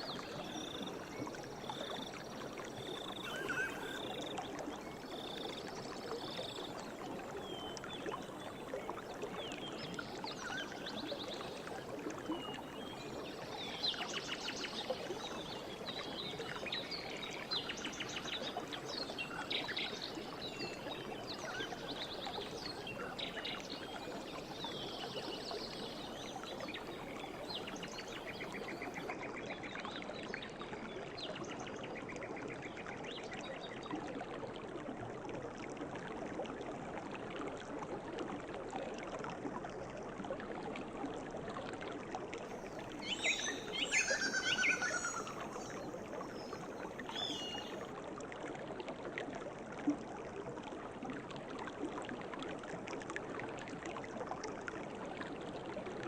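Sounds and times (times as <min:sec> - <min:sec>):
river water flowing: 0:00.0 - 0:56.0
birds chirping and trilling: 0:03.2 - 0:04.1, 0:43.0 - 0:45.4.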